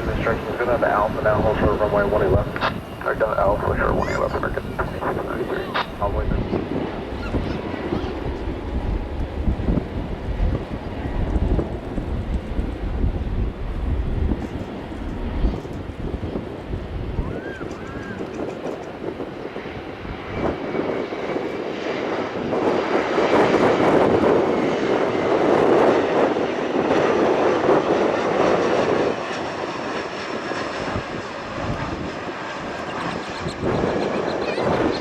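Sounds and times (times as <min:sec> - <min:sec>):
jet airliner passing by: 0:00.0 - 0:35.0.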